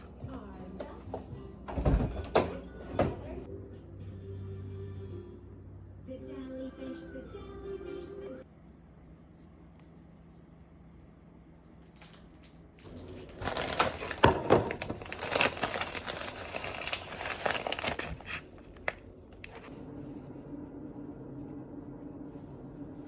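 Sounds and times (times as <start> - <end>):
crinkling and rustling: 11.8 - 19.9.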